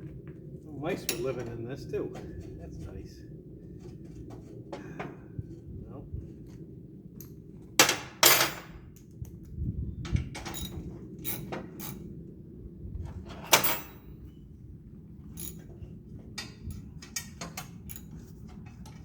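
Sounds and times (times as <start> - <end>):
metal parts clanking and knocking: 7.8 - 8.8, 10.1 - 12.0, 13.3 - 14.0, 15.4 - 15.8, 16.4 - 19.0.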